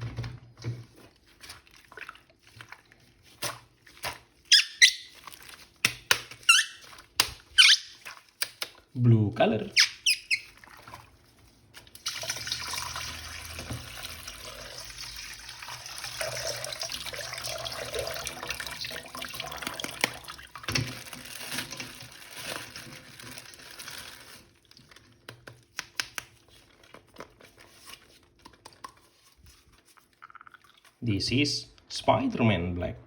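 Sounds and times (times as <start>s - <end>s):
water running from a tap: 12.0s - 24.3s.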